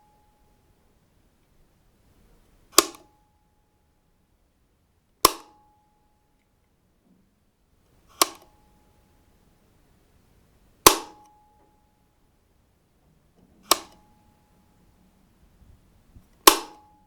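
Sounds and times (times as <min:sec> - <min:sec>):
light switch clicks: 0:13.6 - 0:14.0, 0:16.4 - 0:16.8.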